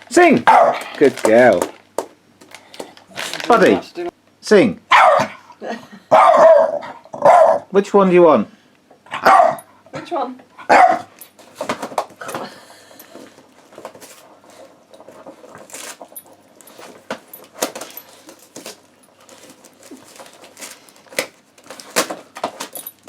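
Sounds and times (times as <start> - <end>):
wrapping paper crackling and tearing: 0.0 - 3.9, 13.7 - 22.8.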